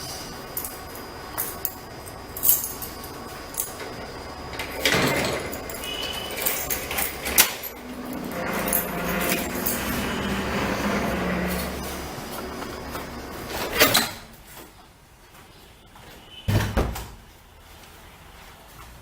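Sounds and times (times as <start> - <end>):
small metal parts clinking: 0.5 - 14.0
rustling and scraping: 1.4 - 14.7.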